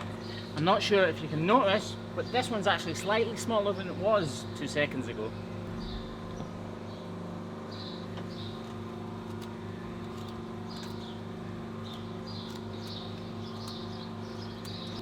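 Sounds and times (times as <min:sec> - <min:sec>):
motor humming: 0:01.4 - 0:15.0.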